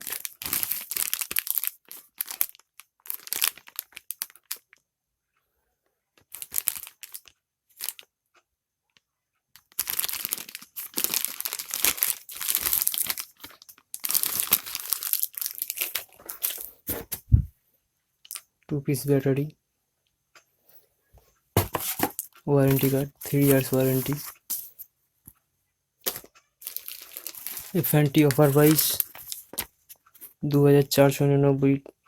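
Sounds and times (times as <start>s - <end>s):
packaging crinkling: 0.0s - 4.8s, 6.3s - 8.0s, 9.6s - 17.2s, 21.6s - 24.8s, 26.1s - 30.4s.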